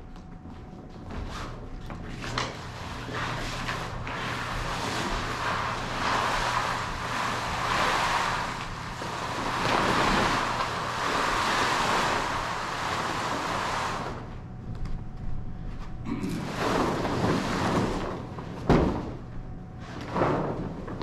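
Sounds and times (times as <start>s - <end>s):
sailcloth rustling and swishing: 0.7s - 14.5s, 16.4s - 19.2s.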